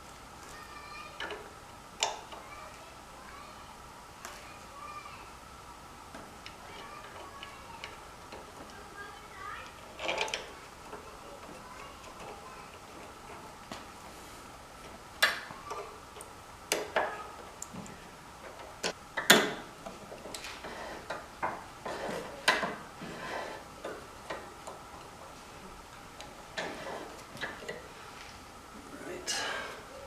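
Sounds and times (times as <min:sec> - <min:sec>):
clicks and knocks of hand tools: 0:09.6 - 0:13.8, 0:18.5 - 0:25.2.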